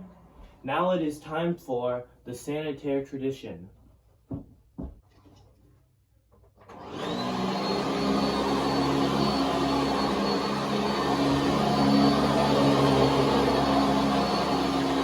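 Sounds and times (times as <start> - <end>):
vacuum cleaner motor running: 6.7 - 15.0.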